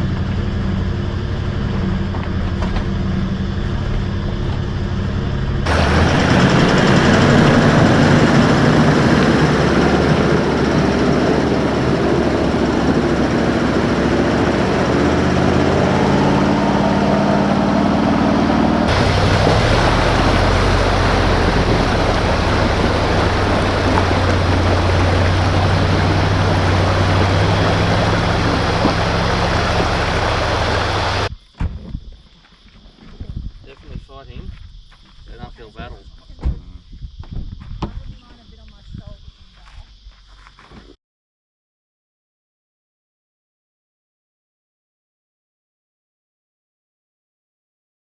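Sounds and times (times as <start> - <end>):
vehicle engine running: 5.7 - 31.3.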